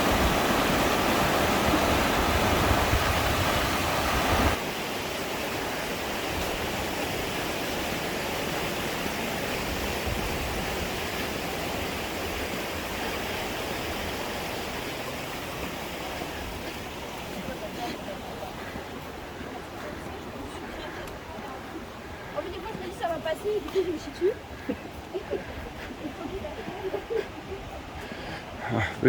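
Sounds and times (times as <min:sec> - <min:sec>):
waterfall and river rushing: 0:00.0 - 0:29.0.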